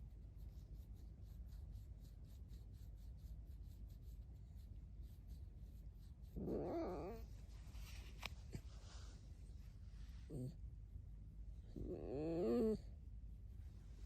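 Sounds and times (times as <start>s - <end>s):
faint rubbing and scratching: 0.0s - 10.6s.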